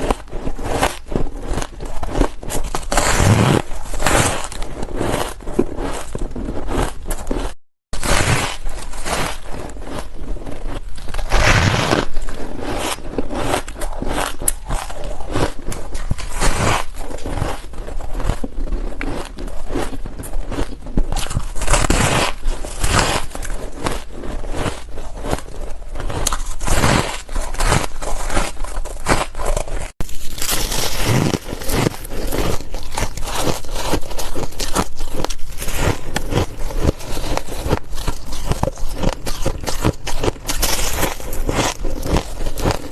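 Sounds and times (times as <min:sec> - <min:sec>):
ice being chewed: 0:00.0 - 0:07.6, 0:08.5 - 0:42.9.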